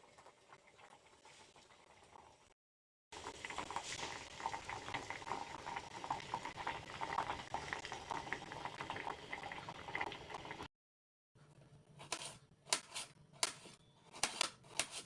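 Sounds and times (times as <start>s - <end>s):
food bubbling in a pan: 0.0s - 10.7s.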